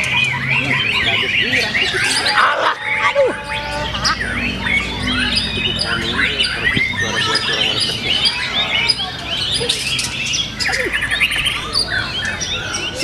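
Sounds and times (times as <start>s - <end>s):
songbirds chirping and trilling: 0.0s - 13.0s.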